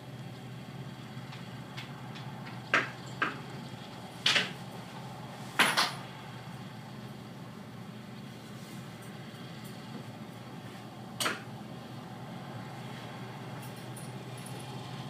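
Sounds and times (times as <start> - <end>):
combine harvester engine drone: 0.0 - 15.0
sharp clattering knocks: 1.3 - 3.5, 4.2 - 4.6.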